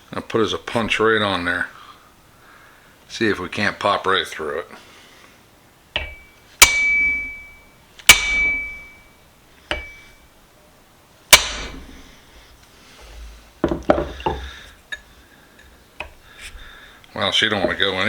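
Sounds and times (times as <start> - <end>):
hammer striking metal punch: 6.0 - 10.2, 11.3 - 11.9.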